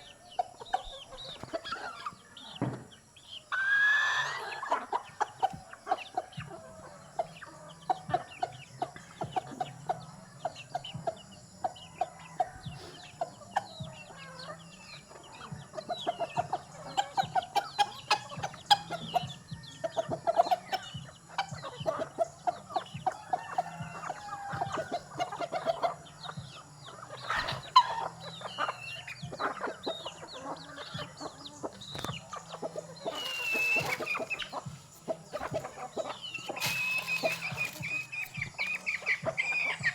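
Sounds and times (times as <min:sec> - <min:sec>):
chickens clucking and peeping: 0:00.0 - 0:39.9
loud falling chicken call: 0:03.5 - 0:04.8, 0:33.1 - 0:34.5, 0:36.4 - 0:38.7.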